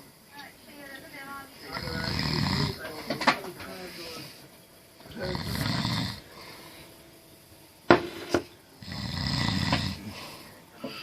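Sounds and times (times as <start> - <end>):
person snoring: 1.6 - 2.9, 5.1 - 6.7, 8.8 - 11.0.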